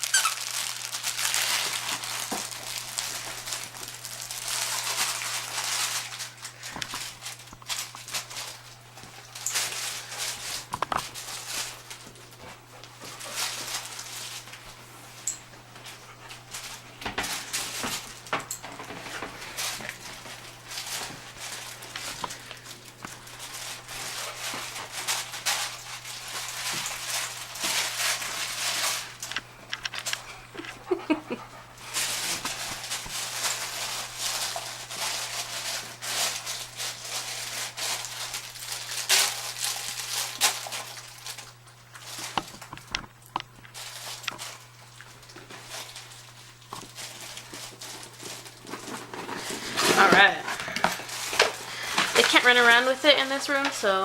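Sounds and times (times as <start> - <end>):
crinkle toy crinkling and rustling: 0.0 - 54.0.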